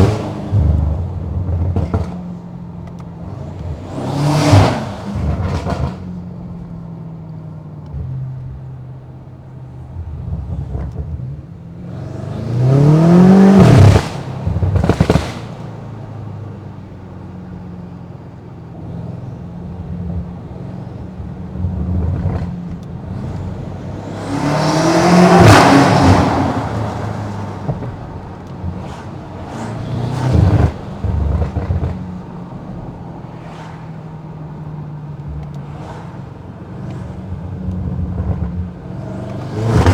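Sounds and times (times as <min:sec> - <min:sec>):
car engine full-throttle pulls: 0:00.0 - 0:39.9.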